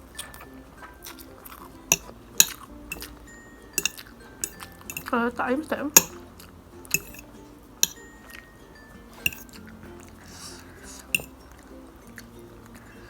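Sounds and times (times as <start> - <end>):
chewing: 0.0 - 3.2
faint music: 0.0 - 13.0
utensil clicking against bowl: 1.9 - 3.2, 3.8 - 5.1, 6.0 - 6.2, 6.9 - 8.0, 9.3 - 9.5, 11.1 - 11.3.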